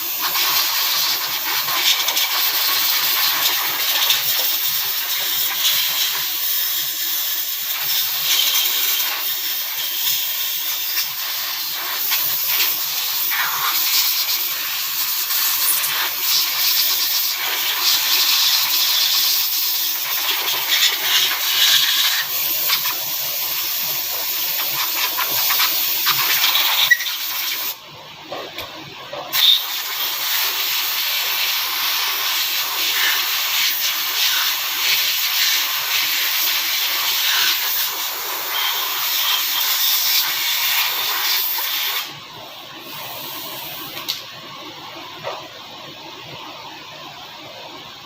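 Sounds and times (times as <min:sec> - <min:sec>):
air blow gun hissing: 0:00.0 - 0:27.8.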